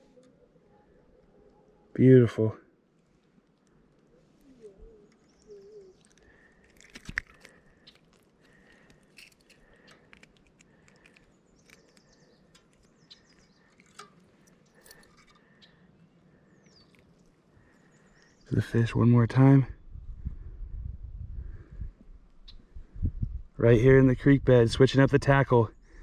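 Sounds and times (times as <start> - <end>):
high bird chirps: 4.5 - 6.4, 11.2 - 15.9
small clicks and knocks: 5.2 - 15.5.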